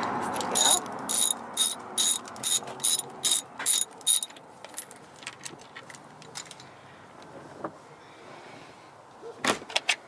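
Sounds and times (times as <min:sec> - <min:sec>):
ratchet wrench clicking: 0:00.4 - 0:04.4.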